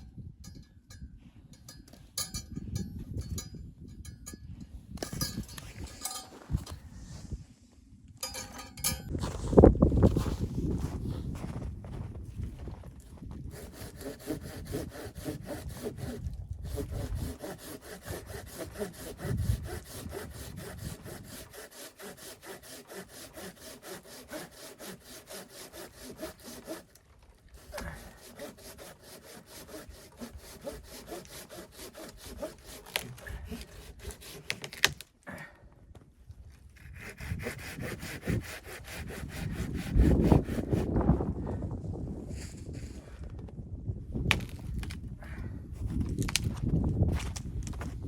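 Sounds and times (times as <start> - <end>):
hand saw cutting wood: 13.4 - 35.0, 36.8 - 41.0.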